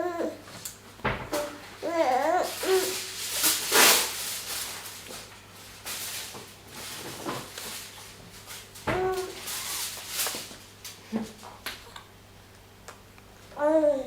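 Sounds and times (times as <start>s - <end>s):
baby cooing: 1.4s - 3.1s, 8.9s - 9.4s, 13.5s - 14.0s.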